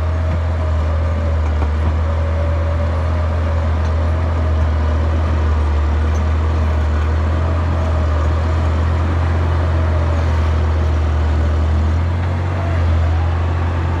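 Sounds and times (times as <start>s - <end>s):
bulldozer diesel engine running: 0.0s - 14.0s.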